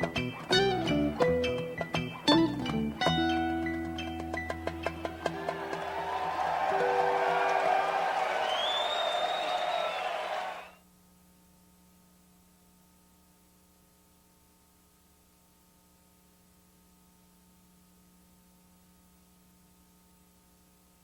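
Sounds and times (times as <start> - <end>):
faint electrical hum and hiss: 9.0 - 21.0.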